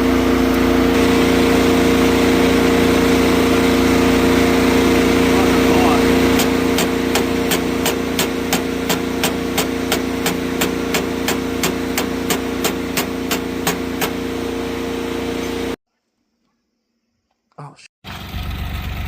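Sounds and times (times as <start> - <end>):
skid steer diesel engine running: 0.0 - 15.8
sharp engine ticking: 0.9 - 14.3.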